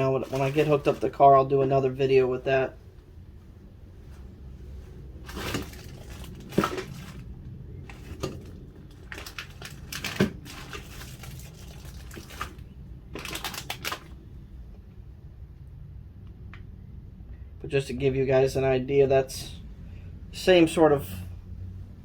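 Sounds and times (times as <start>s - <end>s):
handling rustles and crinkles: 0.0s - 14.2s.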